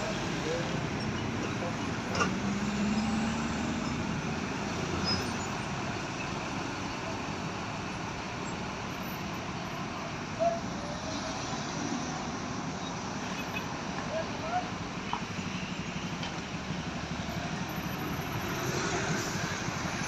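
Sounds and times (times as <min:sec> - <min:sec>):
passing traffic: 0:00.0 - 0:20.0.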